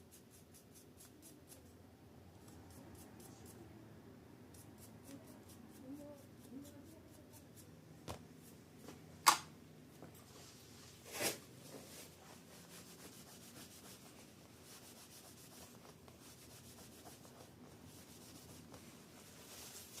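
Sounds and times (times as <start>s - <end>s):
tissue wiping strokes: 10.3s - 20.0s.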